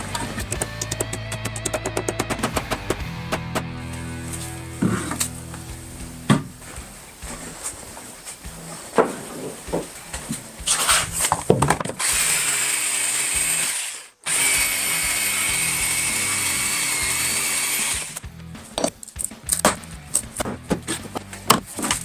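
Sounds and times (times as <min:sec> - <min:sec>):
knocks and clatter: 0:04.8 - 0:12.3
power tool motor whining: 0:12.0 - 0:18.2.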